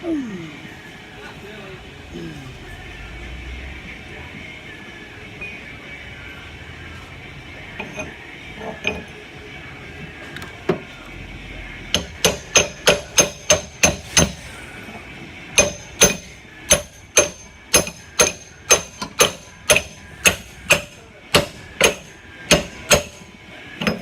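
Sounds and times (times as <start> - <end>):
hammer striking metal: 11.9 - 14.4, 15.6 - 24.0.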